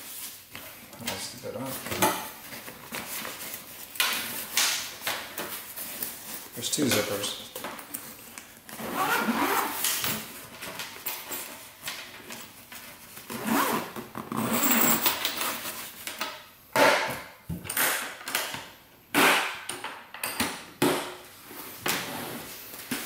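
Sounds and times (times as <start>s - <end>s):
zipper rasping shut: 8.8s - 9.9s, 13.3s - 15.2s.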